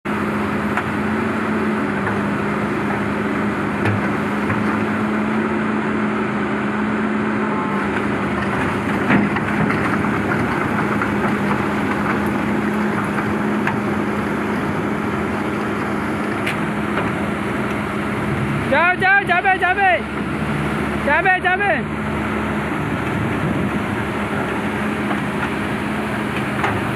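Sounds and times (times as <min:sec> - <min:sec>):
heavy diesel engine running: 0:00.0 - 0:26.9
knocks and clanks: 0:08.0 - 0:14.1, 0:23.0 - 0:26.9.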